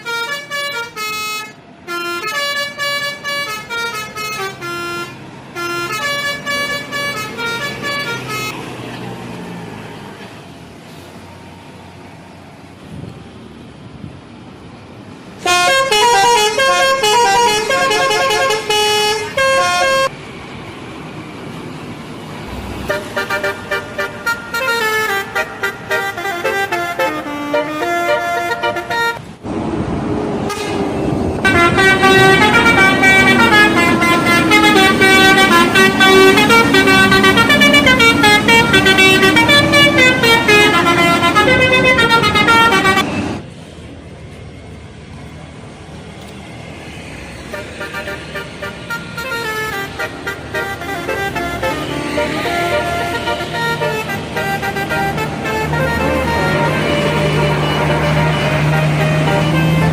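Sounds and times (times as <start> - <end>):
musical bus air horns playing tunes: 0.0 - 8.6, 15.4 - 20.2, 22.8 - 29.2, 30.5 - 43.4, 47.5 - 59.9.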